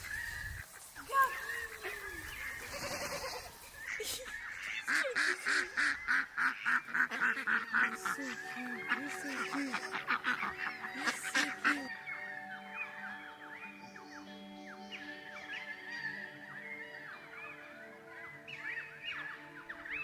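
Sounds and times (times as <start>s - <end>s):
geese honking: 0.0s - 20.0s
soft music with held notes: 5.8s - 20.0s.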